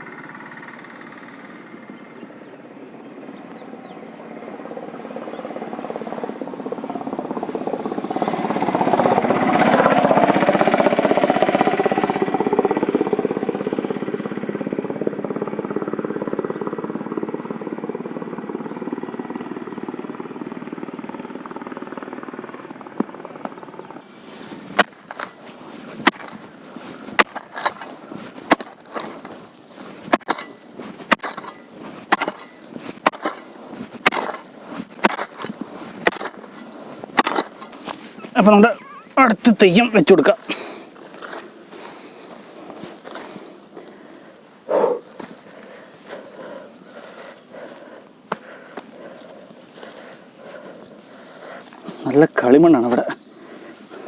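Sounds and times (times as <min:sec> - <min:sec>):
vehicle engine passing by: 0:03.3 - 0:19.9
digging tool chopping clay soil: 0:24.4 - 0:44.0.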